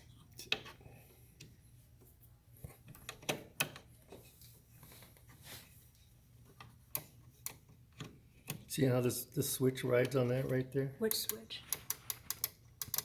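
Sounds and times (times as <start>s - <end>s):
tools clicking and scraping: 11.1s - 13.0s.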